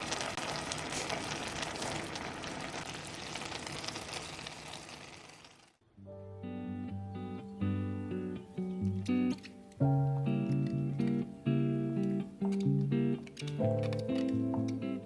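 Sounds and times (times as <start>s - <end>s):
food sizzling in a pan: 0.0s - 5.8s
guitar music: 6.0s - 15.0s.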